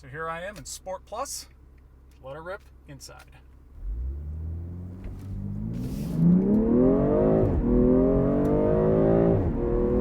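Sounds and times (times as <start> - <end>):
car engine accelerating: 3.7 - 10.0.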